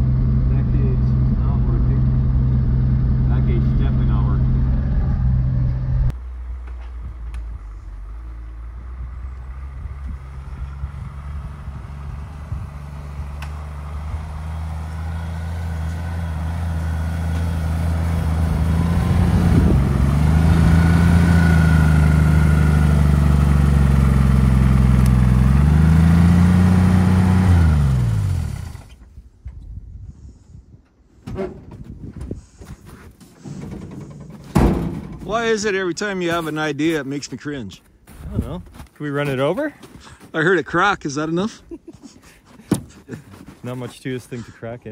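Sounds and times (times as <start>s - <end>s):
truck engine running: 0.0s - 28.9s.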